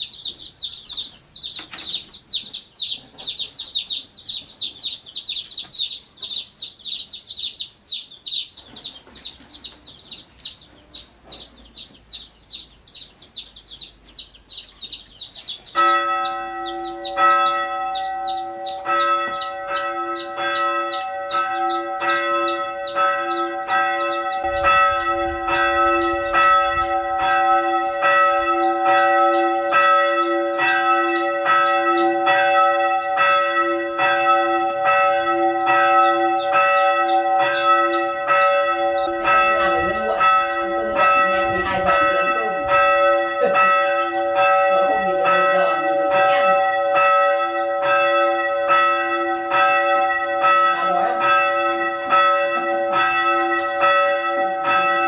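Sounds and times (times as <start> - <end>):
bell-like chiming: 15.8 - 32.0
sliding lower tones: 22.0 - 29.5.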